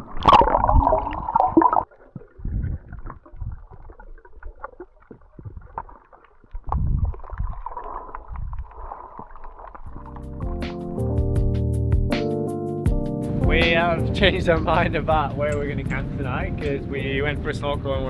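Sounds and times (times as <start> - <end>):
underwater water bubbling: 0.0 - 11.0.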